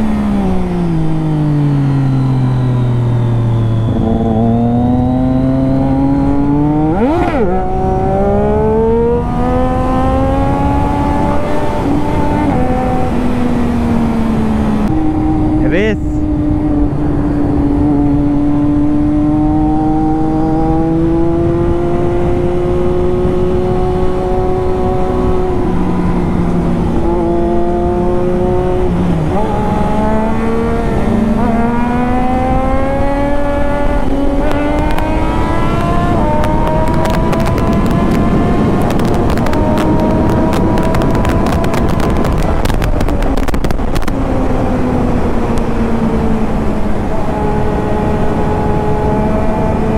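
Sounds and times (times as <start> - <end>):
motorcycle engine running hard: 0.0 - 49.9
wind noise on microphone: 0.0 - 49.9.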